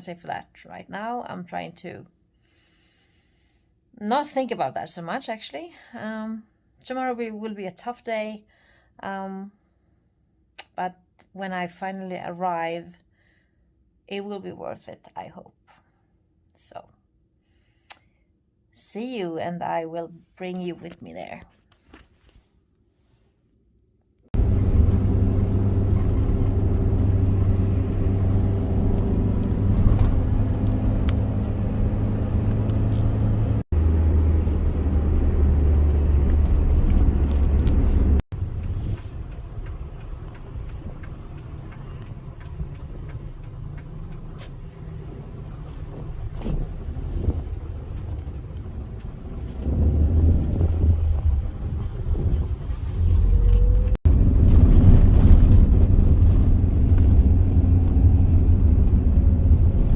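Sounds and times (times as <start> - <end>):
vehicle engine rumble: 24.3 - 59.9.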